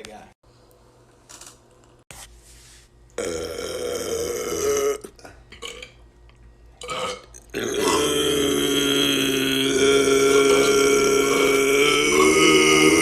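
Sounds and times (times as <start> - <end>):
man burping: 3.2 - 6.0, 6.8 - 13.0.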